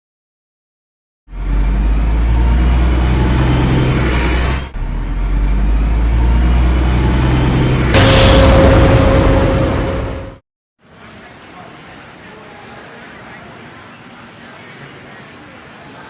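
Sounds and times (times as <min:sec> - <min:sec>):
train rumbling: 0:01.4 - 0:10.4
loud steady held tone: 0:07.0 - 0:10.4.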